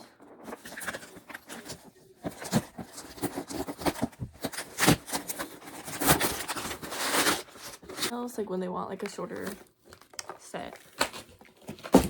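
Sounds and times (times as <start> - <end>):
packaging crinkling: 9.0 - 12.0.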